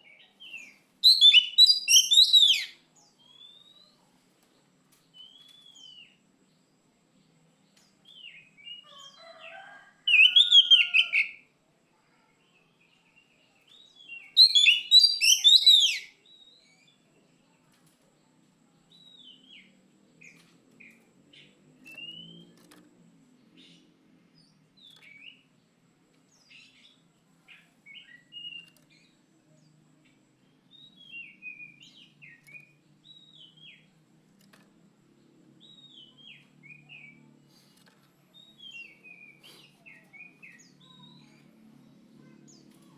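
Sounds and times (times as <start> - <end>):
bird singing whistled notes: 0.1 - 3.9, 10.1 - 11.4, 13.8 - 16.8, 21.9 - 22.6, 30.5 - 33.9.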